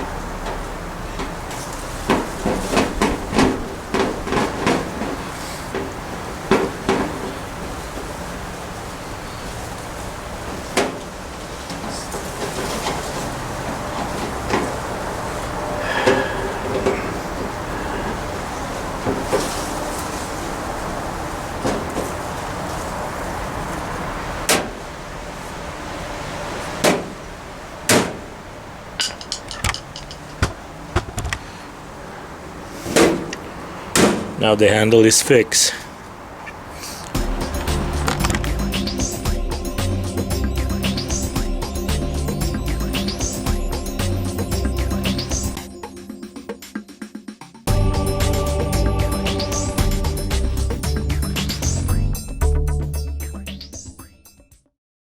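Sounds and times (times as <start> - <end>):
steady background hiss: 0.0 - 46.3
grill door knocks: 0.5 - 7.5, 29.0 - 31.5
light metal clicks and knocks: 29.0 - 31.5.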